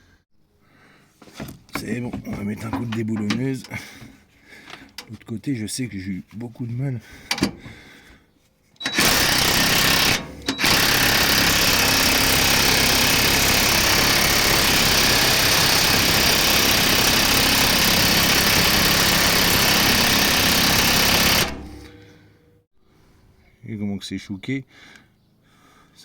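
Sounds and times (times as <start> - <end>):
impact wrench hammering: 1.4 - 5.1, 7.3 - 7.8, 8.8 - 22.0.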